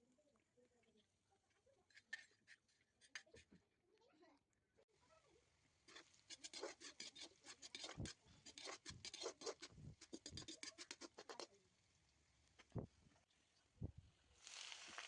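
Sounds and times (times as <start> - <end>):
fast scraping strokes: 5.9 - 11.4.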